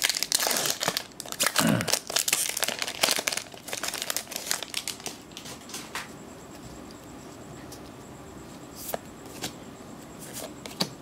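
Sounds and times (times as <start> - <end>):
foil wrapper crinkling and tearing: 0.0 - 5.7.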